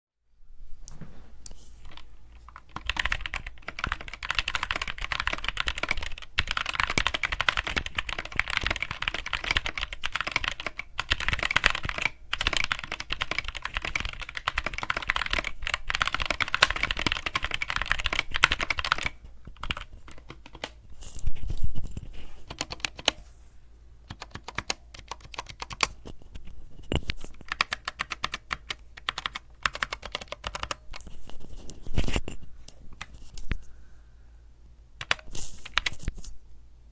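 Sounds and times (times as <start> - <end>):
mechanical keyboard typing: 1.9 - 20.8, 22.5 - 23.2, 24.1 - 26.0, 27.4 - 31.1, 35.0 - 36.1.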